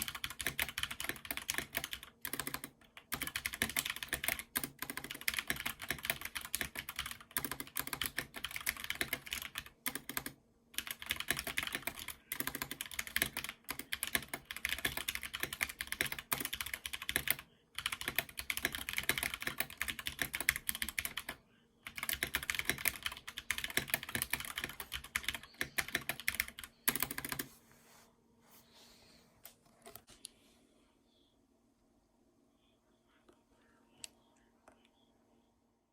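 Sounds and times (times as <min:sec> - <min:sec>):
mechanical keyboard typing: 0:00.0 - 0:27.5.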